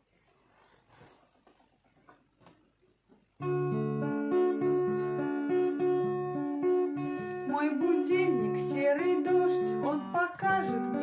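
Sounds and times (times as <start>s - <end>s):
acoustic guitar chords: 3.4s - 11.0s
person singing: 7.2s - 11.0s.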